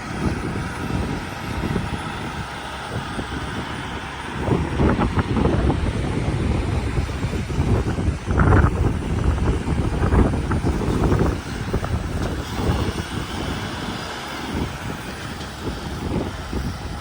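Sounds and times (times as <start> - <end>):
road noise: 0.0 - 17.0
semi truck engine rumble: 0.0 - 17.0.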